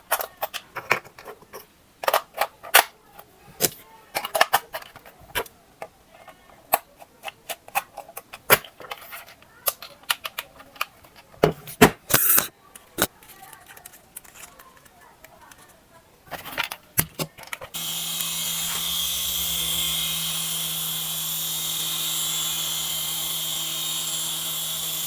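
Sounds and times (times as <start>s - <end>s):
toy parts clicking: 6.7s - 11.2s.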